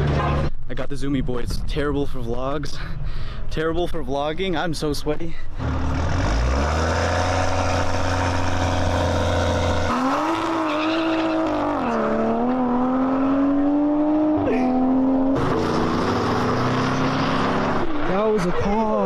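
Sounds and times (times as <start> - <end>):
car engine revving: 5.6 - 19.0.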